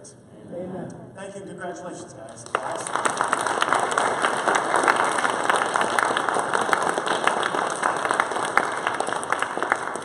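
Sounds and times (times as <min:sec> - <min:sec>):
audience applause: 0:02.4 - 0:10.0.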